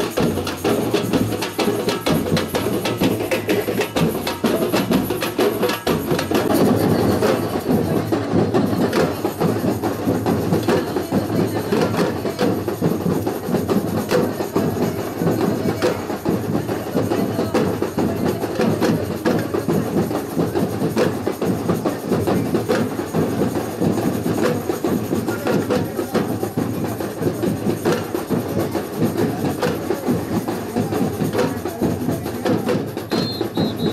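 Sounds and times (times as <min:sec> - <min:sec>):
samba percussion ensemble: 0:00.0 - 0:33.9
sharp drum strokes: 0:18.8 - 0:33.9.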